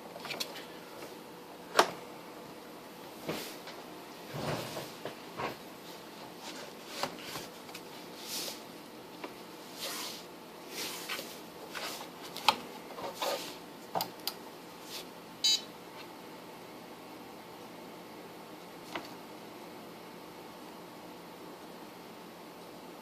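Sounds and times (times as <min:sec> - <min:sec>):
cables rustling and clicking: 0:00.0 - 0:02.0.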